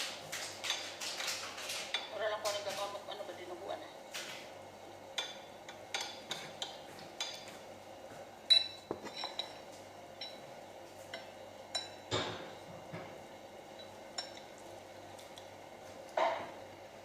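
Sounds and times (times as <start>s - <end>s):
spoon clinking against dishware: 8.5s - 9.6s, 11.1s - 12.2s, 13.8s - 14.5s.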